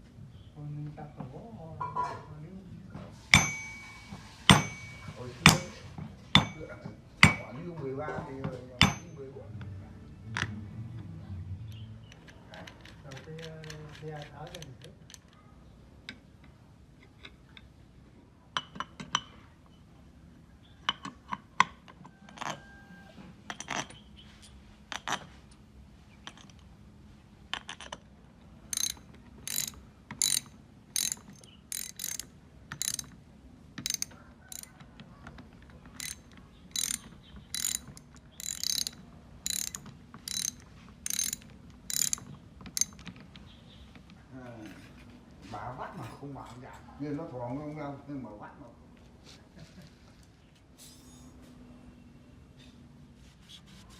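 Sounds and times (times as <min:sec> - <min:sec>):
hand tool striking metal: 0:03.2 - 0:07.6, 0:08.8 - 0:09.2, 0:28.8 - 0:33.1, 0:33.8 - 0:34.7, 0:36.0 - 0:43.0.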